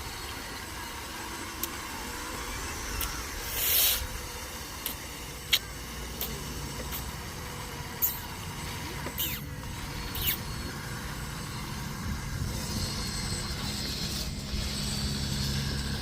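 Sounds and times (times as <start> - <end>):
small electric motors humming: 0.0 - 16.0
short sharp chirps: 10.1 - 10.4.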